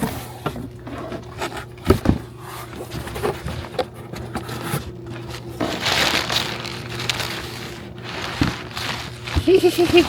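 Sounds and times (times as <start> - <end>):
steady low hum: 0.0 - 10.0
packing material rustling: 4.4 - 10.0.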